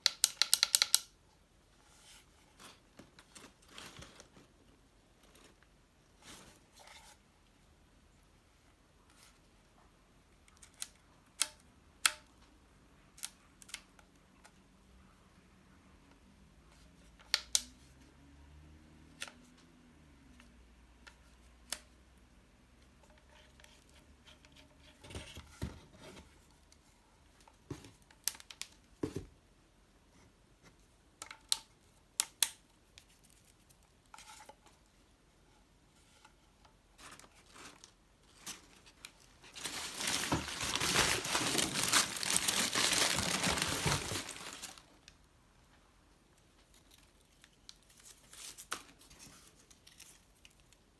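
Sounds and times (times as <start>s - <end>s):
packing material crinkling and tearing: 37.0s - 45.0s
packing material knocks and clicks: 38.3s - 44.9s.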